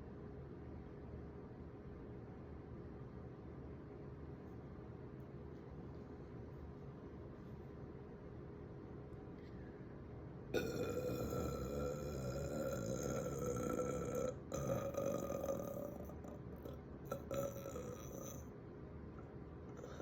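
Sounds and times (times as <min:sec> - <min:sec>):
person burping: 0:10.6 - 0:18.5.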